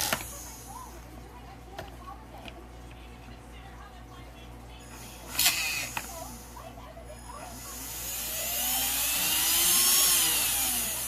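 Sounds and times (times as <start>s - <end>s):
electric motor whine: 7.6s - 11.0s.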